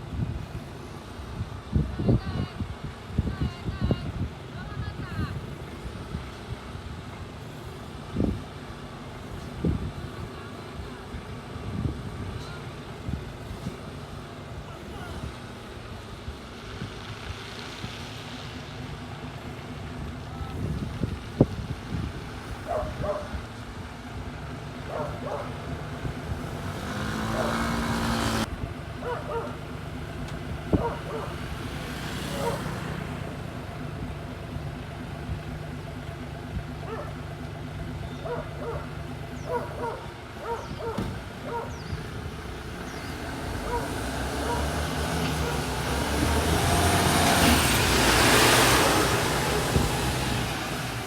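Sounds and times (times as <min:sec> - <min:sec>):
fire engine idling: 0:00.0 - 0:26.7, 0:28.4 - 0:43.8
dog barking: 0:22.7 - 0:23.4, 0:24.9 - 0:25.6, 0:29.0 - 0:29.6, 0:30.8 - 0:31.4, 0:32.4 - 0:32.7, 0:36.8 - 0:37.2, 0:38.2 - 0:41.8, 0:43.6 - 0:44.7, 0:45.4 - 0:45.7.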